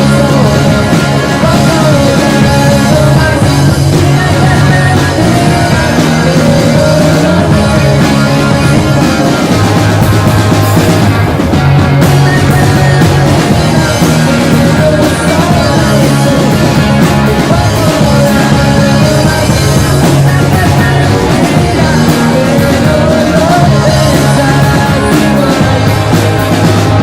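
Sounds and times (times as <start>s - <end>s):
electric guitar lead line: 0.0s - 27.0s
rock band playing live: 0.0s - 27.0s.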